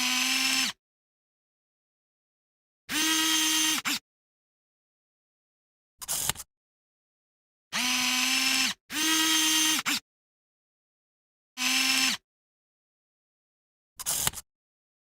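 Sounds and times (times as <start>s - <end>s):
camera zoom motor whirring: 0.0s - 0.8s, 2.9s - 4.0s, 11.6s - 12.2s
small click: 6.0s - 6.5s, 14.0s - 14.4s.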